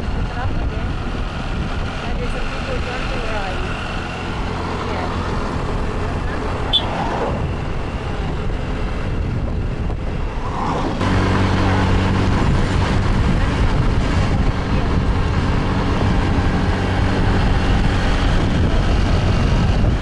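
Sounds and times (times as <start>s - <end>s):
motorbike engine running: 0.0s - 10.2s
wind rushing over microphone: 0.0s - 20.0s.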